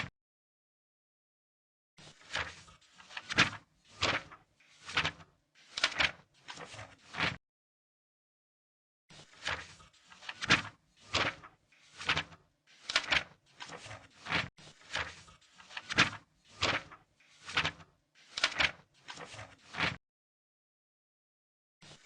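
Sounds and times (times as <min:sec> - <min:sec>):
paper pages turning: 0:02.0 - 0:07.4, 0:09.1 - 0:20.0.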